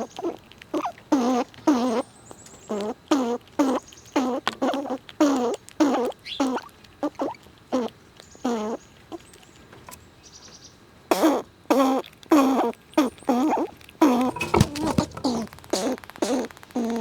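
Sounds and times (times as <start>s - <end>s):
squirrel calling: 2.6s - 9.2s.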